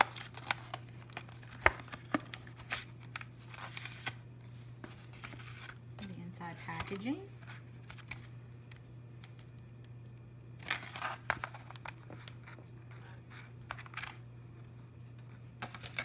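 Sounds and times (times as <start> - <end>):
packaging rustling and crinkling: 0.0 - 4.2, 4.8 - 5.8
low steady hum: 0.0 - 16.0.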